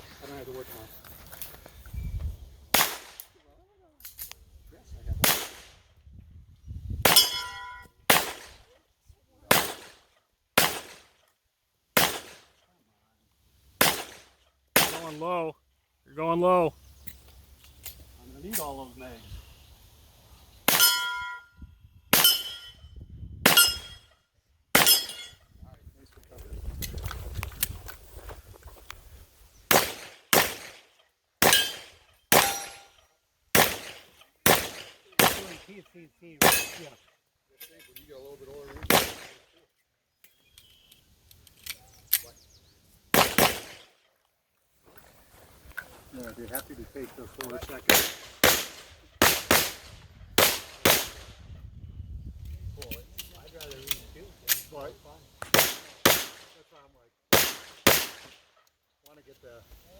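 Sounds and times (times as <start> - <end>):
pistol shots: 2.7 - 3.3, 5.2 - 5.8, 8.1 - 8.6, 9.5 - 10.0, 10.6 - 11.2, 12.0 - 12.5, 13.8 - 15.2, 22.1 - 22.7, 23.4 - 24.0, 24.7 - 25.3, 29.7 - 32.9, 33.5 - 35.8, 36.4 - 37.0, 38.9 - 39.4, 43.1 - 43.9, 47.8 - 51.3, 55.4 - 56.6, 57.3 - 58.4
steel target ringing: 7.1 - 7.9, 20.7 - 21.6, 22.2 - 22.9, 23.5 - 24.1, 24.8 - 25.4, 31.5 - 33.0.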